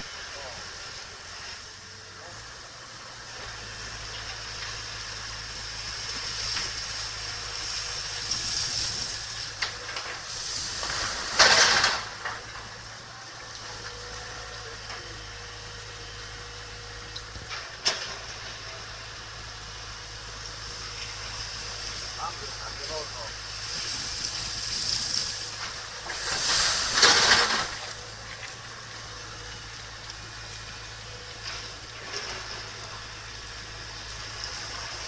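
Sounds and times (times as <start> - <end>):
heavy machine running: 0.0 - 35.0
loud hiss: 3.3 - 13.6, 18.2 - 29.8.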